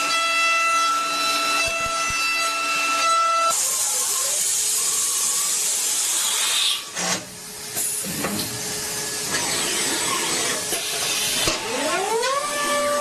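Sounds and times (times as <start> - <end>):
metalworking machine hissing: 3.5 - 13.0.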